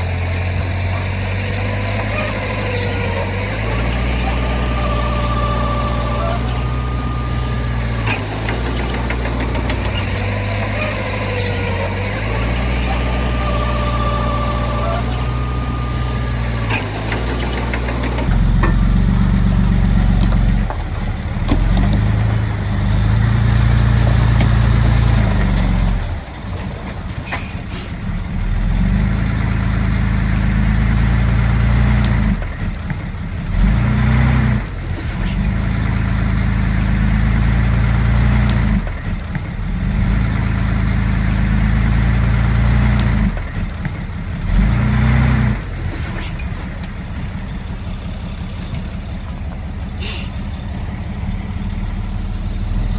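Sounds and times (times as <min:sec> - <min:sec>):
metallic clanks: 0:00.0 - 0:28.4
bulldozer diesel engine: 0:00.0 - 0:52.9.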